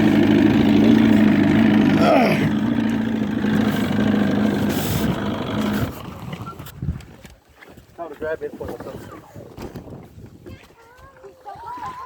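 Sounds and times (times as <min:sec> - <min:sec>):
motorboat engine running: 0:00.0 - 0:07.2
water noise: 0:00.0 - 0:12.0
wind noise: 0:04.6 - 0:07.9, 0:08.5 - 0:12.0.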